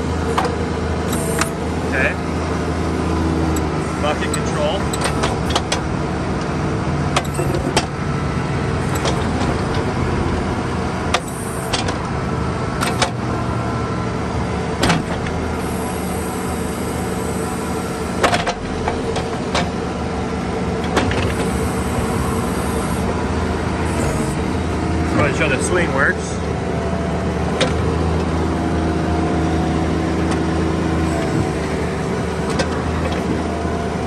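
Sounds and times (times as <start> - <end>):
sharp clunks: 0.0 - 6.0, 7.2 - 8.0, 8.8 - 10.0, 10.7 - 12.1, 12.8 - 13.8, 14.8 - 20.0, 20.8 - 25.4, 31.0 - 34.0
mini excavator diesel engine: 0.0 - 34.0.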